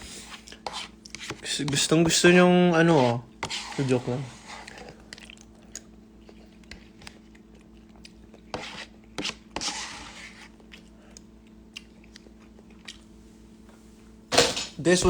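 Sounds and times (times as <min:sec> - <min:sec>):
person chewing: 0:04.6 - 0:09.6, 0:10.3 - 0:13.2.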